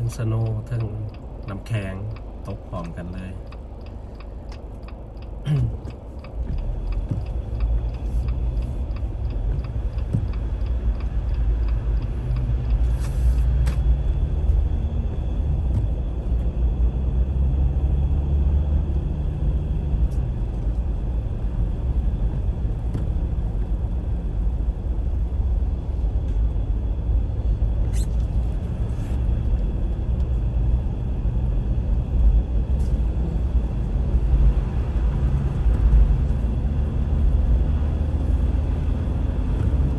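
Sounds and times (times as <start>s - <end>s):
light regular ticking: 0.0s - 12.9s
car engine and tyres rumbling: 0.0s - 39.9s.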